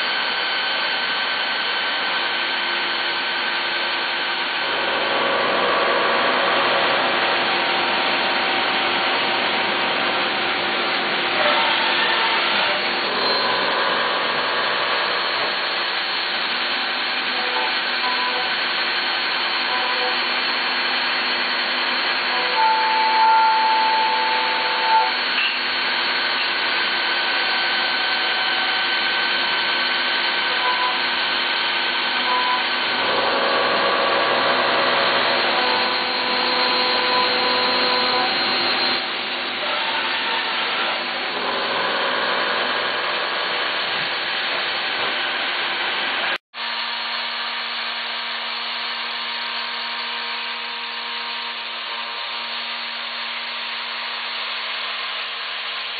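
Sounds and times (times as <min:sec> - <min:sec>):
milling machine whirring: 0:00.0 - 0:55.9.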